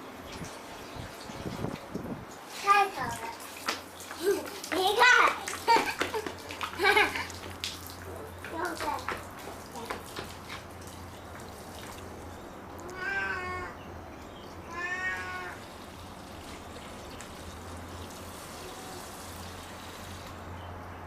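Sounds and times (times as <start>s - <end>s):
cat meowing: 12.8s - 13.8s, 14.7s - 15.6s.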